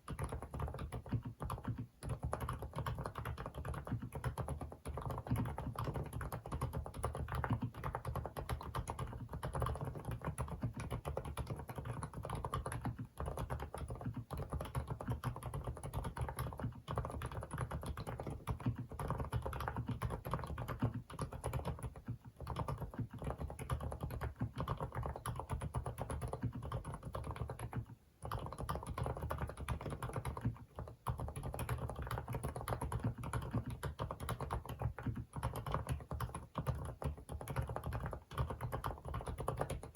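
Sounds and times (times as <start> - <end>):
soft keyboard typing: 0.0 - 39.9.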